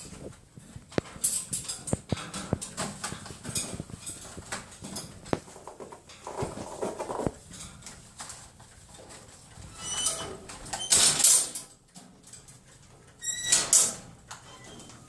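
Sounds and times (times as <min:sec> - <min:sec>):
metal cage doors clanking: 0:01.0 - 0:05.2, 0:09.7 - 0:15.0.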